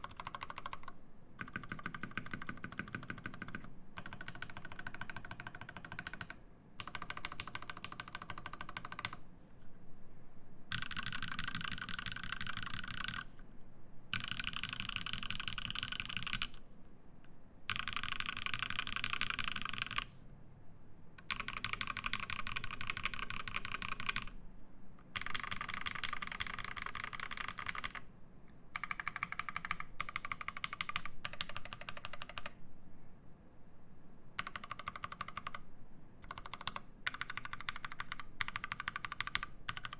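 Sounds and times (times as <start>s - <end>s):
mechanical keyboard typing: 0.0s - 9.2s, 10.7s - 13.3s, 14.1s - 16.6s, 17.7s - 20.1s, 21.2s - 24.4s, 25.0s - 28.1s, 28.8s - 32.6s, 34.4s - 35.6s, 36.2s - 39.9s.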